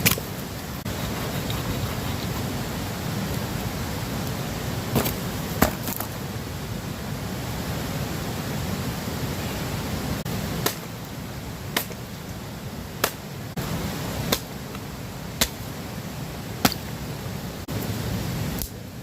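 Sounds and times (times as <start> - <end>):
steady rushing background noise: 0.0 - 19.0
hatchet chopping firewood: 5.0 - 6.1, 10.6 - 10.9, 11.7 - 12.0, 13.0 - 13.2.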